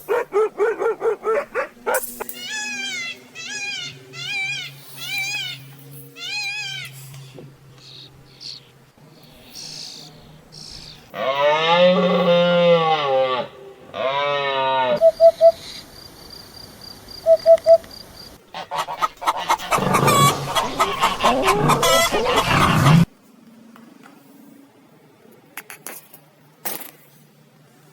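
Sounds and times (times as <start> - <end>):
mixed overlapping animal calls: 0.0 - 15.8, 17.2 - 23.1.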